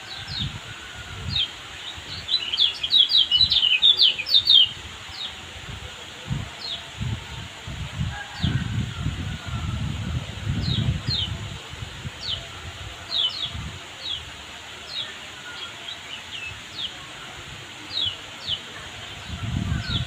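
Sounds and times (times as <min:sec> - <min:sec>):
songbird chirping: 0:01.2 - 0:05.4.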